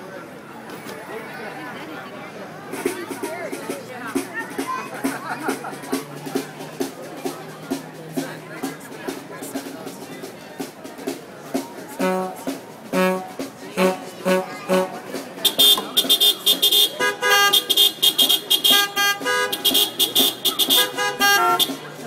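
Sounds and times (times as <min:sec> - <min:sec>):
car horns playing tuned notes: 0:12.0 - 0:22.0.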